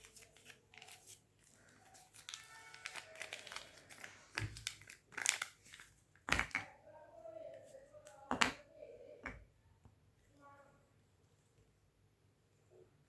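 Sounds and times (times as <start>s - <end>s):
packaging crinkling: 0.0s - 6.6s
packaging ripping: 2.0s - 5.9s.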